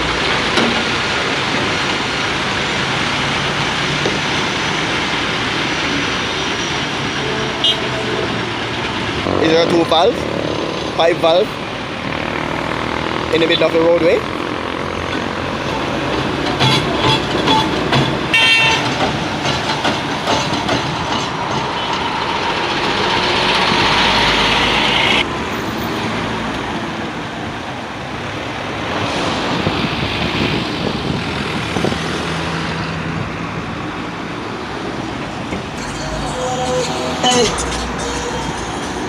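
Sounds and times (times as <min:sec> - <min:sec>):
road vehicle noise: 0:00.0 - 0:39.0
steady traffic noise: 0:00.0 - 0:39.0
short horn toot: 0:18.4 - 0:18.8
rising rush of noise: 0:21.4 - 0:39.0.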